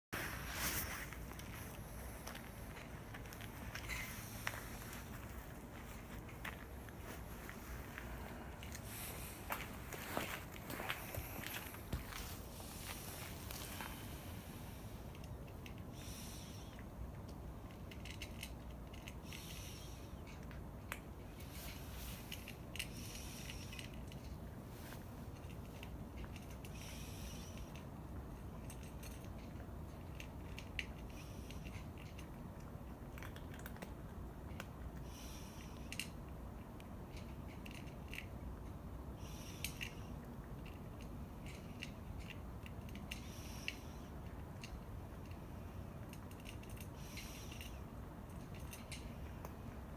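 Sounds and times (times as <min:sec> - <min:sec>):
cat crunching food: 0:00.4 - 0:49.9.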